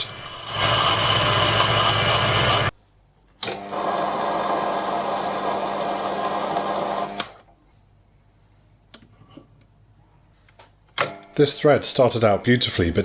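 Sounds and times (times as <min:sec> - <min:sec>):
mini lathe humming: 0:00.0 - 0:02.7.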